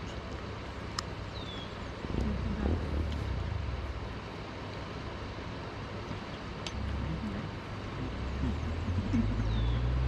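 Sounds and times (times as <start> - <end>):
waterfall rushing: 1.8 - 10.0
brief low rumble: 2.0 - 4.7.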